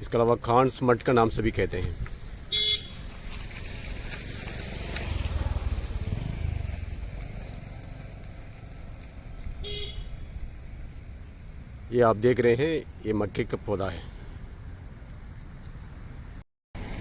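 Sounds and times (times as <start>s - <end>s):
short horn beep: 2.6s - 3.0s, 9.6s - 10.1s
vehicle engine rumble passing: 2.9s - 9.6s.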